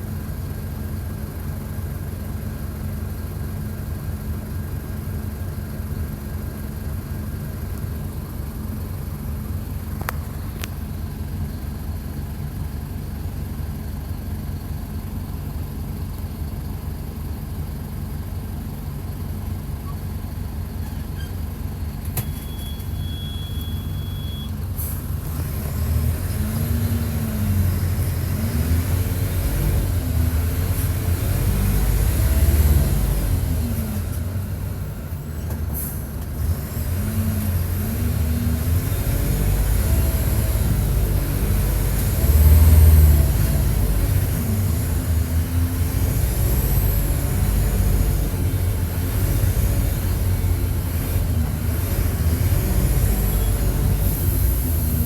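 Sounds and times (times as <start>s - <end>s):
bus diesel engine revving: 24.6s - 55.0s.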